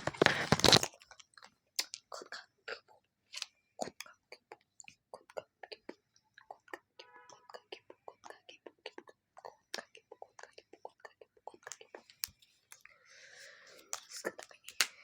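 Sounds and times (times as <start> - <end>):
person whispering: 3.8 - 15.0.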